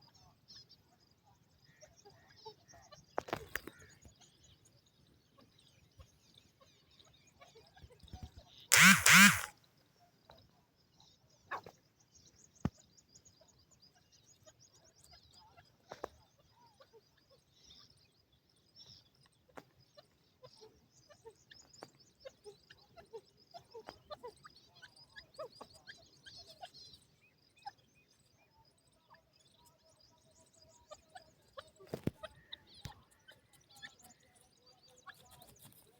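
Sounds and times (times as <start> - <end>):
francolin calling harshly: 8.7 - 9.5
sharp click: 8.7 - 9.5
faint high-pitched chirping: 11.0 - 35.9.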